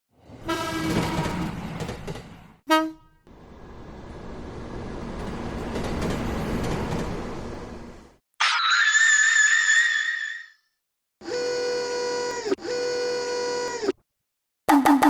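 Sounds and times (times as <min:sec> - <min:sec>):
train running noise: 0:00.2 - 0:08.2
train horn: 0:00.4 - 0:01.4, 0:02.7 - 0:03.2.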